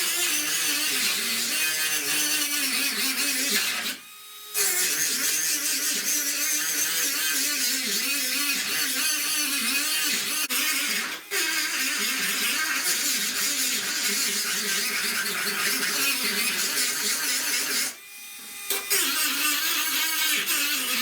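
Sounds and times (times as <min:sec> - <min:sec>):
die grinder grinding metal: 0:00.0 - 0:21.0.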